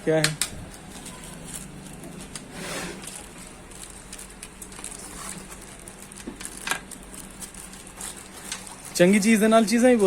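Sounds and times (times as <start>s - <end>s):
microphone and packaging rustles: 0.5s - 9.6s.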